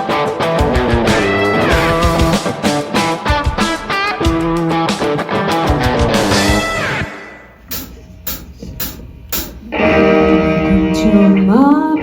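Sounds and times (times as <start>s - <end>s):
bass guitar: 0.0s - 2.7s, 3.3s - 7.1s, 7.7s - 11.9s
distorted electric guitar: 0.0s - 12.0s
steady drum beat: 7.7s - 9.8s.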